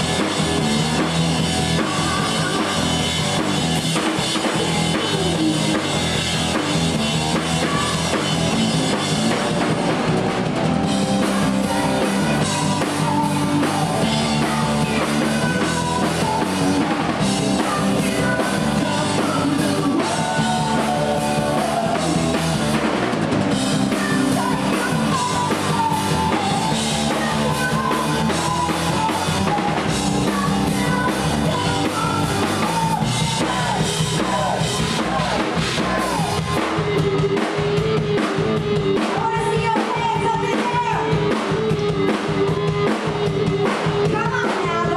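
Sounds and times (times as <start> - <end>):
rock band playing live: 0.0 - 44.9
woman singing: 1.7 - 3.0, 7.4 - 8.2, 10.9 - 22.5, 23.6 - 37.4, 39.0 - 41.6, 44.0 - 44.9.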